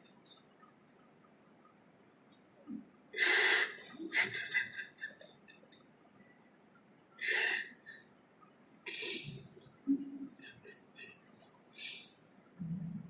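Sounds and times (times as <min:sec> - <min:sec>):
sharp breaths close to microphone: 0:07.2 - 0:08.1.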